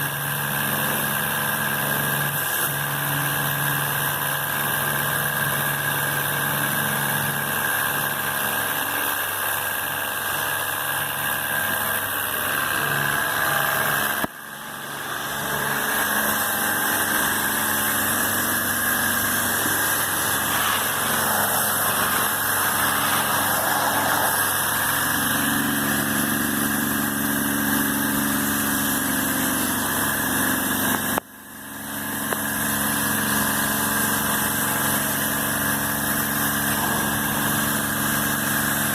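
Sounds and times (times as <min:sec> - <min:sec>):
pressure washer spraying: 0:12.9 - 0:38.9.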